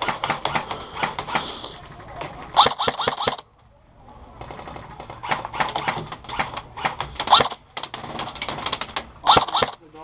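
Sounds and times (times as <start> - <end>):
airsoft guns firing: 0.0 - 3.4, 4.4 - 9.9.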